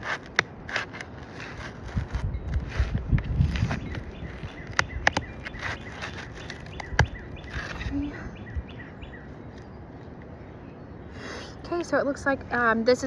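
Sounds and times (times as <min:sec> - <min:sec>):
shingles cracking as pried up: 0:00.0 - 0:07.9
faint birds chirping: 0:02.2 - 0:13.0.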